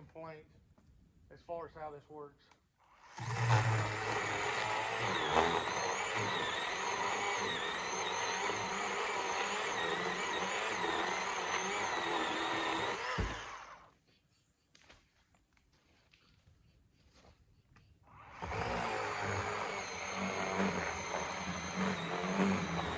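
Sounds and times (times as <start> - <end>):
electric chainsaw cutting log: 2.9 - 13.9, 18.2 - 22.9.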